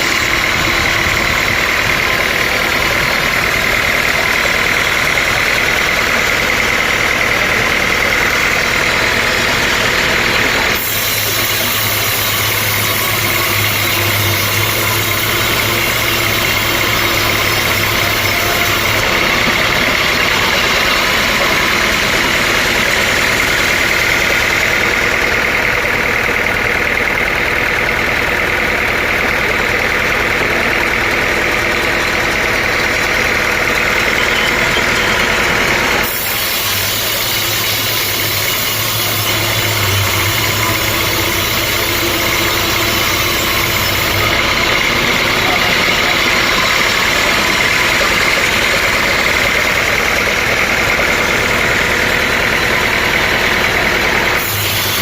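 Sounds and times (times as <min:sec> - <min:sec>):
steady high tone: 0:00.0 - 0:25.4, 0:30.1 - 0:54.4
sawmill machinery drone: 0:00.0 - 0:55.0.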